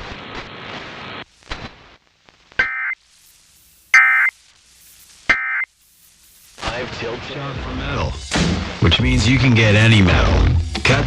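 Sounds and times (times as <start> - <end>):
faint radio static hiss: 0.0 - 11.0
two-tone digital data squawks: 2.6 - 3.0, 3.9 - 4.4, 5.3 - 5.7.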